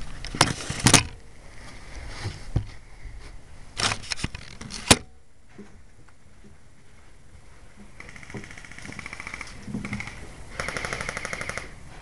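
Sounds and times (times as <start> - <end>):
airsoft guns firing: 10.6 - 11.7.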